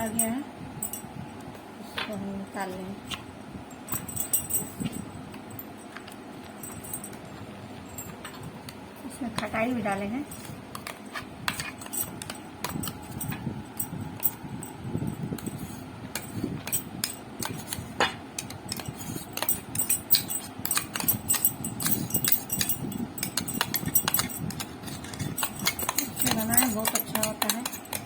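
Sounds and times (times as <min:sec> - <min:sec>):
kitchen utensils clicking: 0:16.2 - 0:28.0.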